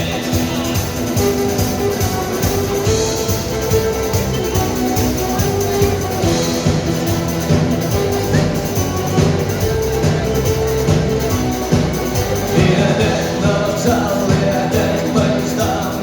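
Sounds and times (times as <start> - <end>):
electric guitars: 0.0 - 16.0
steady drum beat: 0.0 - 16.0.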